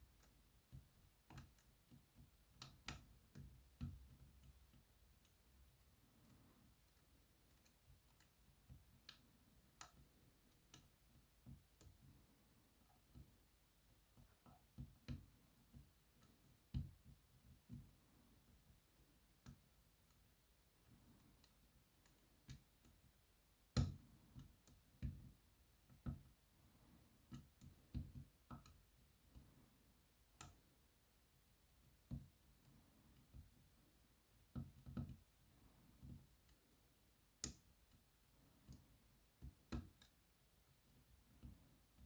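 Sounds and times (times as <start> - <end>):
lock pick clicks and taps: 0.0 - 5.4, 6.2 - 12.0.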